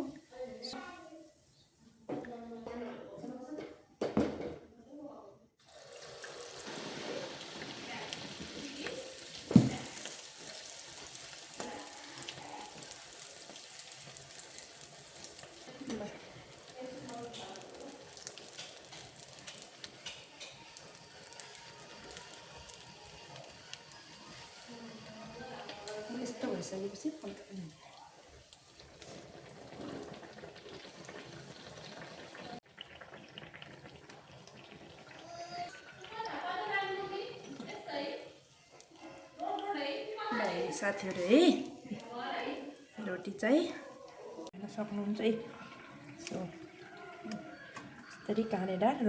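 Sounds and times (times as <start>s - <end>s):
batter sizzling in hot oil: 5.6s - 43.8s.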